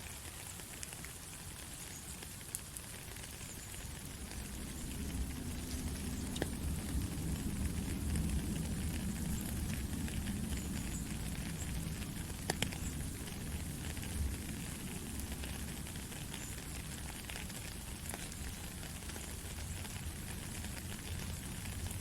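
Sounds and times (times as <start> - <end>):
rain falling steadily: 0.0 - 22.0.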